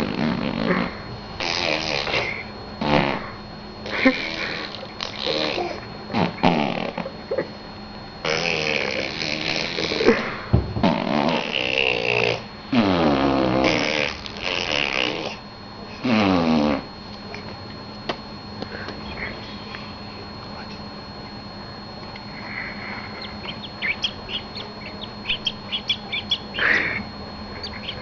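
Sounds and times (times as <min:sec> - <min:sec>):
person making drawn-out vocal noises: 0:03.9 - 0:07.5, 0:26.6 - 0:27.1.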